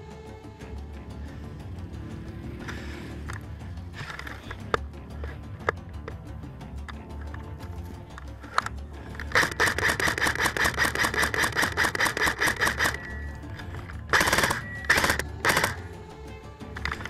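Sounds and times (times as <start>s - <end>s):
gearbox whining: 0.0s - 17.0s
airsoft gun firing bursts: 8.6s - 16.0s.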